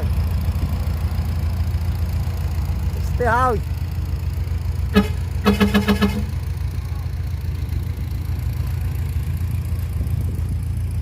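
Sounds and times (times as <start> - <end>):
heavy diesel engine idling: 0.0 - 11.0
short pitched pulses: 4.9 - 6.4.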